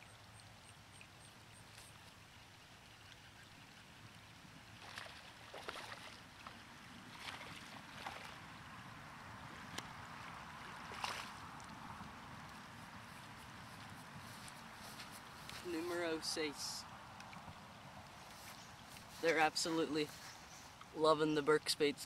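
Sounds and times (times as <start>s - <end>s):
water splashing: 0.0s - 20.1s
steady low hiss: 8.4s - 22.0s.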